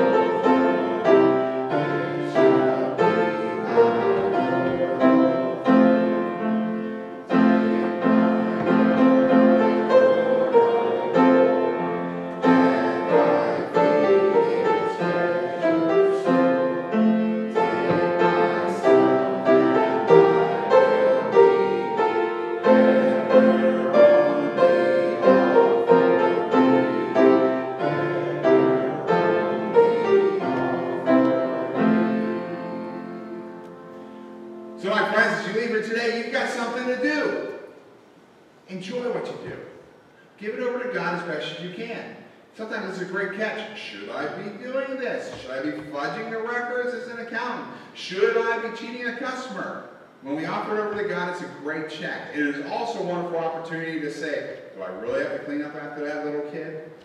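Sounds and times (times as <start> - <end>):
piano playing a hymn: 0.0 - 37.9.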